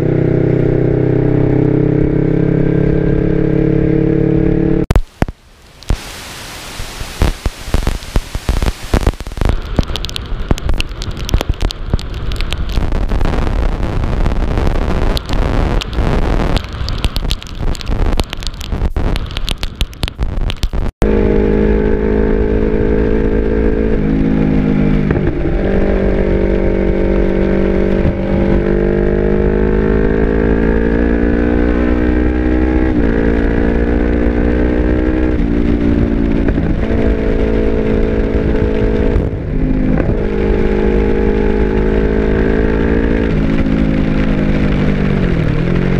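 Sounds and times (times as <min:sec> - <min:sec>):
motorcycle engine revving: 0:00.0 - 0:04.9, 0:21.0 - 0:45.9
rushing crackling noise: 0:04.4 - 0:45.9.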